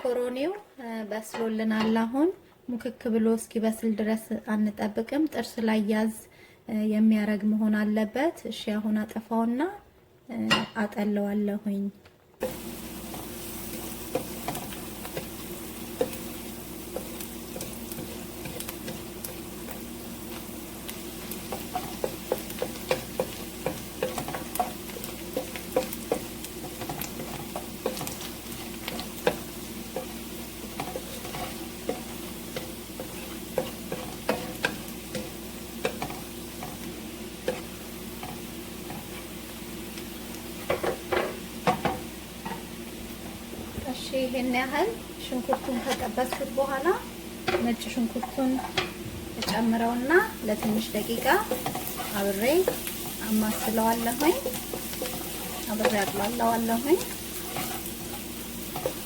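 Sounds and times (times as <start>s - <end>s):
onion sizzling in a frying pan: 12.4s - 59.0s
utensil knocking and scraping pan: 21.4s - 39.3s, 45.4s - 46.6s, 50.4s - 59.0s.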